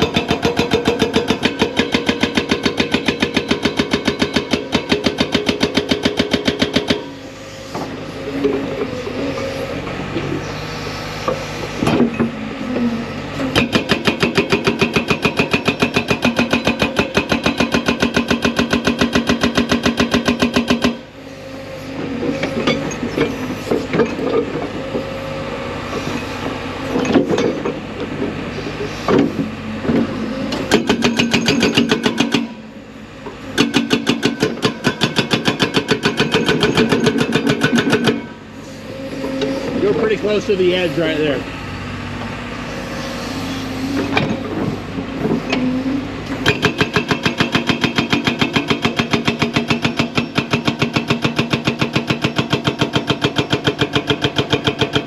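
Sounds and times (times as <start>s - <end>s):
hydraulic breaker hammering rock: 0.0s - 21.2s, 21.8s - 41.5s, 43.8s - 55.0s
diesel engine running: 0.0s - 55.0s.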